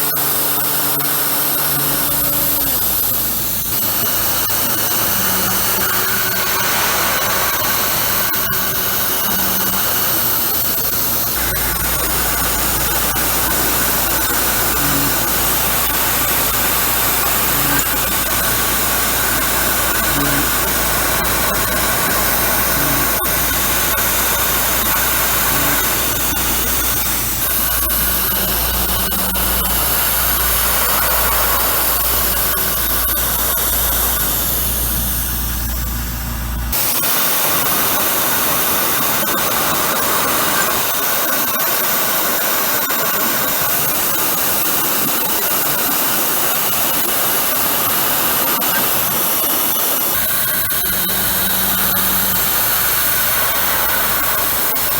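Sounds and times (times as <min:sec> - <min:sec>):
cnc mill hissing: 0:00.0 - 0:54.9
low machine hum: 0:01.6 - 0:36.8, 0:50.2 - 0:54.9.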